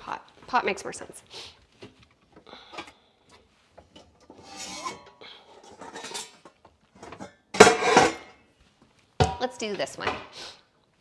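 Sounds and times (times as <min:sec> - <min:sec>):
pots and pans clattering: 0:03.8 - 0:08.4, 0:09.2 - 0:10.3.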